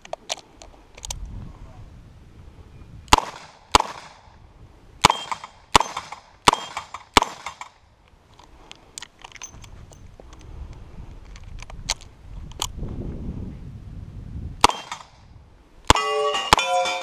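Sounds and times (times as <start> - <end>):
gunshots: 3.1 - 4.2, 5.0 - 7.8, 14.6 - 15.2.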